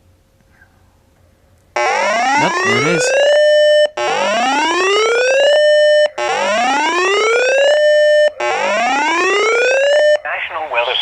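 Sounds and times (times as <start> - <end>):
electronic whooping alert tone: 1.8 - 4.4.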